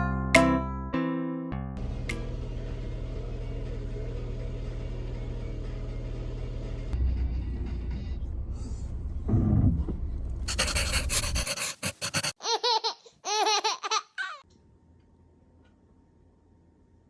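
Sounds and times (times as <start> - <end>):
low rumble of car interior: 6.6 - 10.5
child giggling: 10.5 - 14.4.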